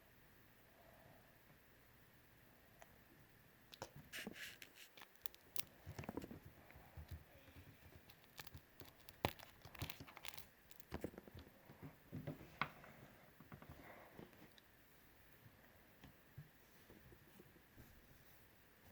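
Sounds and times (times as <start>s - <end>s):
slime clicking and crackling: 4.9s - 5.7s, 8.0s - 11.0s.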